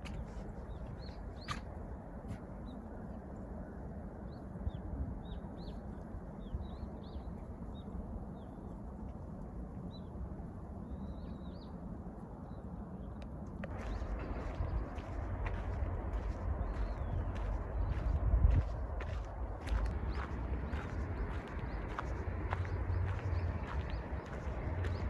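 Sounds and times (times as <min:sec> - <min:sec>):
small birds chirping: 0:00.0 - 0:01.8, 0:13.1 - 0:25.0
low background rumble: 0:00.0 - 0:25.0.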